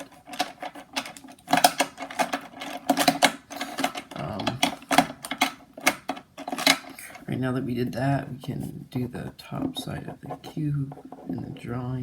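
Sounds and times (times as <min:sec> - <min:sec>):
puzzle cube plastic clicking: 0:00.0 - 0:07.2.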